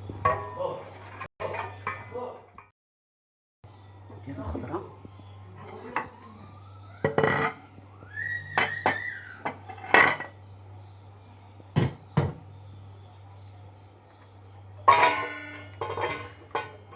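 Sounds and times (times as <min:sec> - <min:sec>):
dishes and utensils clattering: 0:00.2 - 0:02.2, 0:07.0 - 0:07.6, 0:08.6 - 0:10.4, 0:14.8 - 0:16.9.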